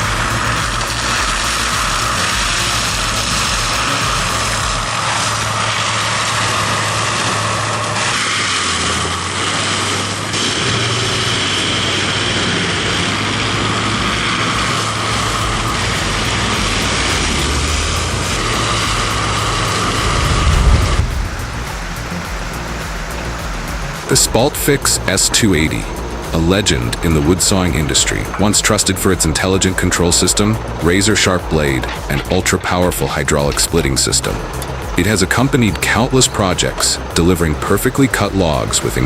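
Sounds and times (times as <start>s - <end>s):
heavy machinery engine under load: 0.0s - 39.0s.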